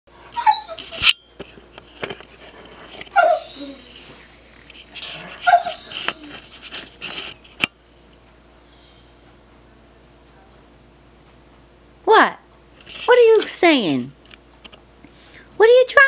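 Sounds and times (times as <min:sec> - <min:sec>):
dog whining: 0:00.2 - 0:01.1, 0:03.1 - 0:07.5.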